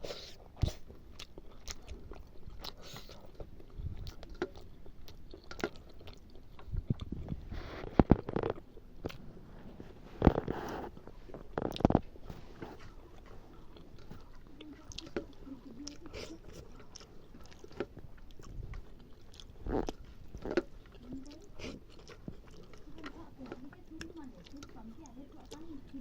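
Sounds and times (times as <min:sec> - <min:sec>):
person chewing food: 0:00.0 - 0:26.0.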